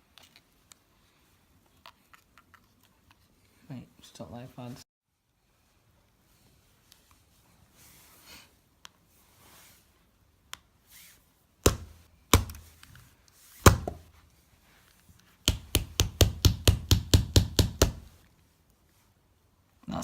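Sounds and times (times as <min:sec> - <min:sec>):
hard blows striking a phone: 0:11.6 - 0:12.8, 0:13.6 - 0:14.1, 0:15.5 - 0:18.1.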